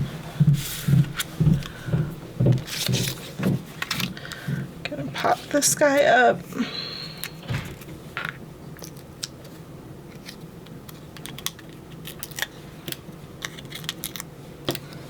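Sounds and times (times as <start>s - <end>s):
paper rustling: 2.6s - 4.4s.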